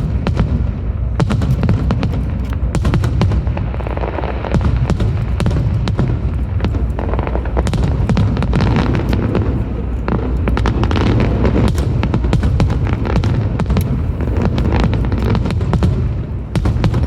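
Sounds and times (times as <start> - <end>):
fireworks crackling pops and bangs: 0.0 - 17.0
low rumble of booming shells: 0.0 - 17.0.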